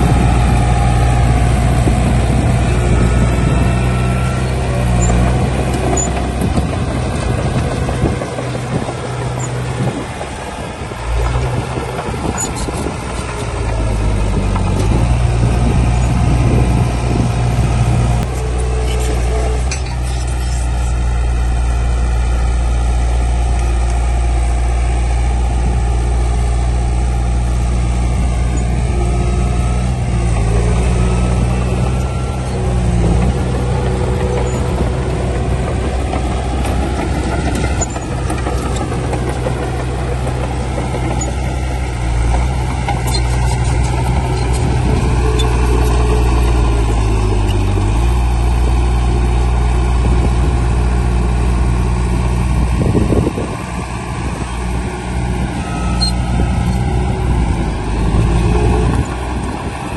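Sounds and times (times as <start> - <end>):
heavy diesel engine running: 0.0 - 59.9.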